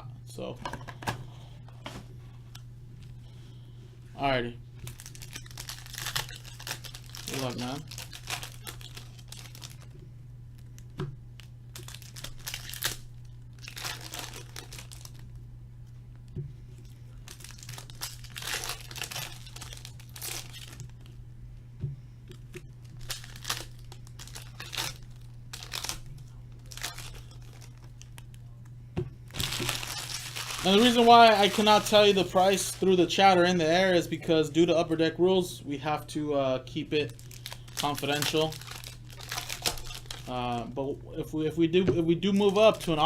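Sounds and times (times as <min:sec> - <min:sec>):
low electrical hum: 0:00.0 - 0:43.0
plastic and foil wrapping crinkling: 0:04.8 - 0:15.4, 0:16.8 - 0:21.2, 0:22.8 - 0:28.6, 0:29.3 - 0:33.2, 0:37.0 - 0:40.7.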